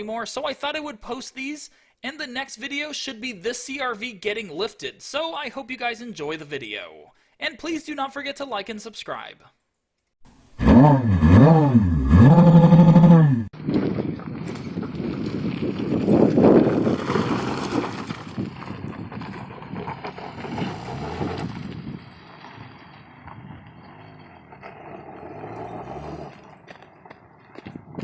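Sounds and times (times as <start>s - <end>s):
tyres over rough ground: 10.3s - 28.0s.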